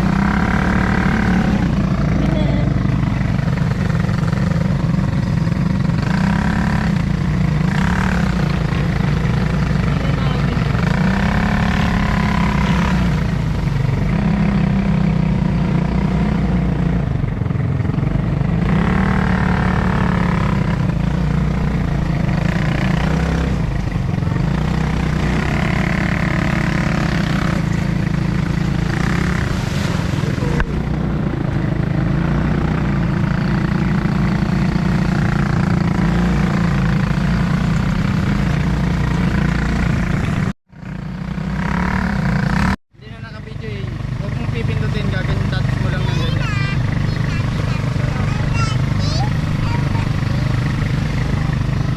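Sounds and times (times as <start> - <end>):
atv engine running: 0.0 - 51.9
indistinct voices: 44.2 - 51.8.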